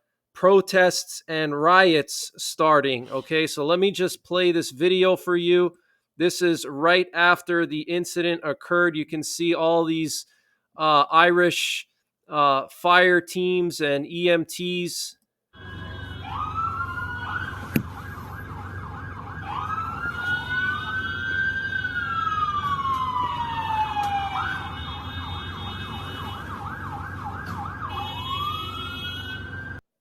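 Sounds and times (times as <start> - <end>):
emergency vehicle sirens: 15.6 - 29.8.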